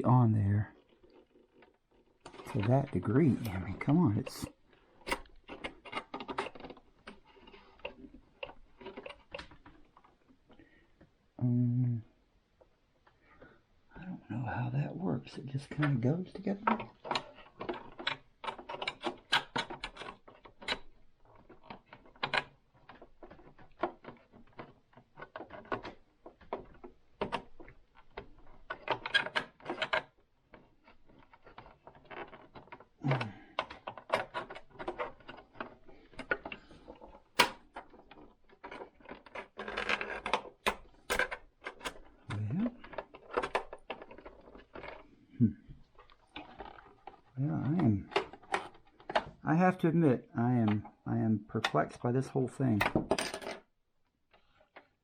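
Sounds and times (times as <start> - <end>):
hands prying at plastic casing: 4.8 - 10.5, 16.7 - 47.4.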